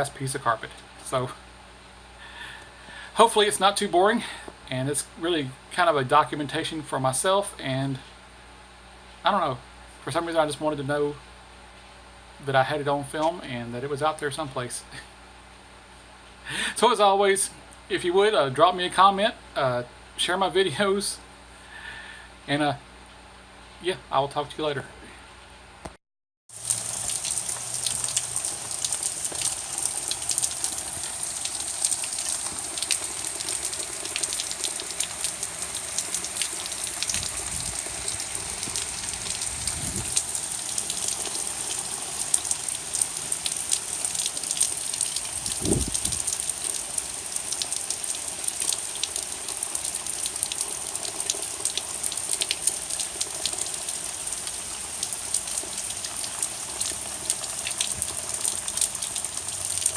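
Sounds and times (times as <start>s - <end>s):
rain pattering: 26.5s - 59.9s.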